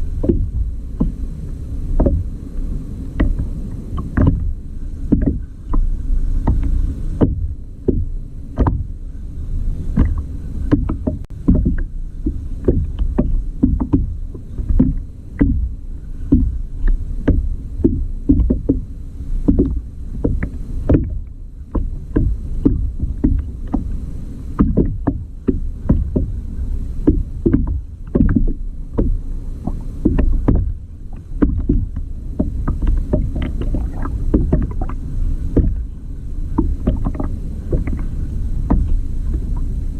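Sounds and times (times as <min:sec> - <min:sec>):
water rumbling against hull: 0:00.0 - 0:39.9
short knocks and clicks: 0:03.2 - 0:08.9, 0:10.0 - 0:15.7, 0:16.3 - 0:18.9, 0:19.5 - 0:24.0, 0:27.0 - 0:35.9, 0:36.5 - 0:39.7.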